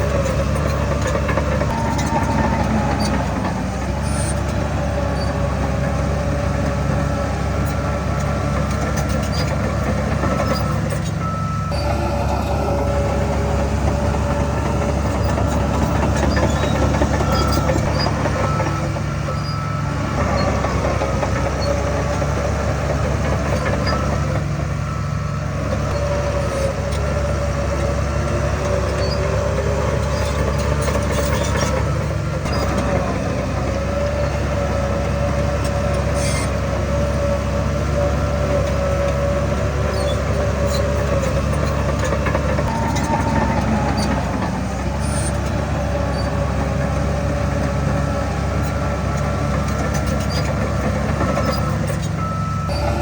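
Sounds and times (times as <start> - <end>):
diesel engine running under load: 0.0 - 53.0.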